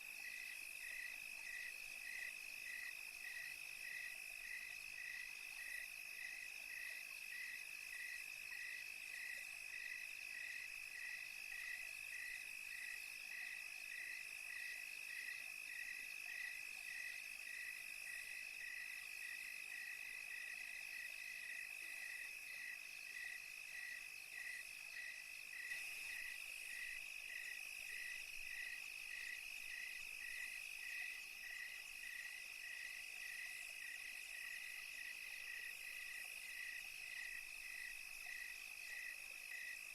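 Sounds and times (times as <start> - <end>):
insect chirping evenly: 0.0 - 39.9
crickets trilling: 10.4 - 39.9.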